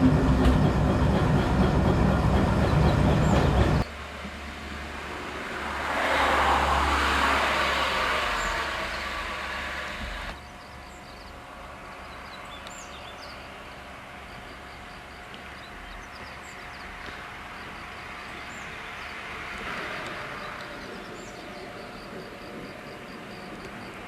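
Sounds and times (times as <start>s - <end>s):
diesel train running: 0.0s - 24.0s
bird chirps: 10.4s - 17.1s.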